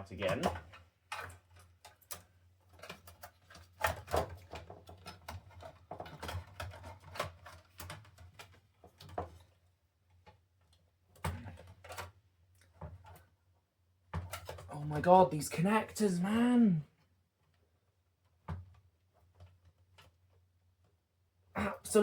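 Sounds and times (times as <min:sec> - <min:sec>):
plastic and metal clicks and rattles: 0:00.2 - 0:09.6, 0:14.2 - 0:14.7.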